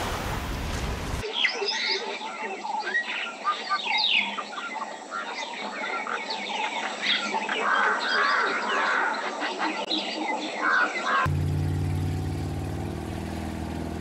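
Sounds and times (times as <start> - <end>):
flock of birds chirping: 1.2 - 11.3.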